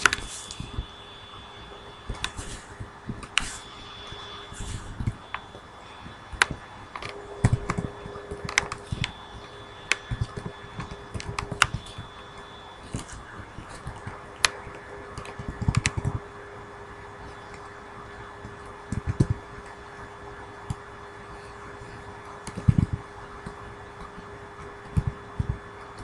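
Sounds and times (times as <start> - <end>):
faint hum: 0.0 - 26.0
computer keyboard typing: 13.8 - 16.2.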